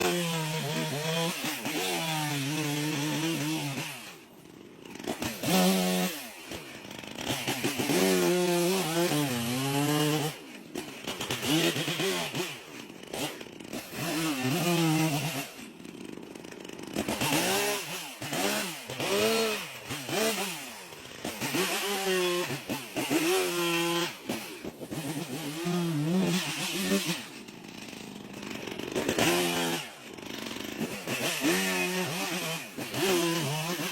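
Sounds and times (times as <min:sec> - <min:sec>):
chainsaw engine revving: 0:00.0 - 0:33.9.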